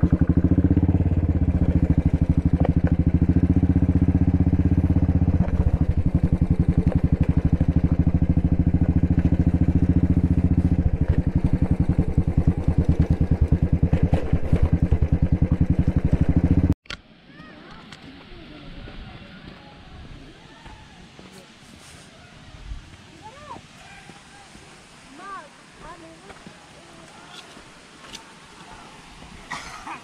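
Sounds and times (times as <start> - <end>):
single-cylinder motorcycle engine running: 0.0 - 16.8.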